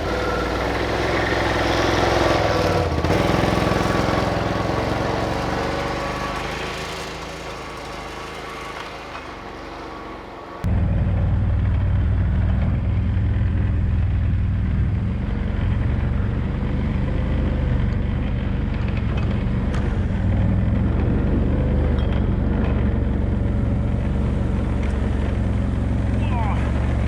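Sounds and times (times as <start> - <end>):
atv engine droning: 0.0 - 27.0.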